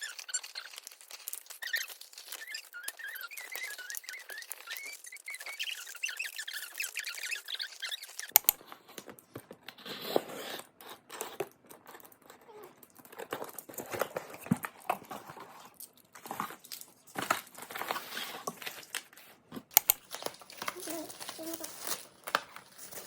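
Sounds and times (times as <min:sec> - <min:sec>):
plastic packaging crinkling: 0:00.0 - 0:10.0, 0:11.0 - 0:23.0
small clicks and taps: 0:08.1 - 0:09.8, 0:18.4 - 0:21.6.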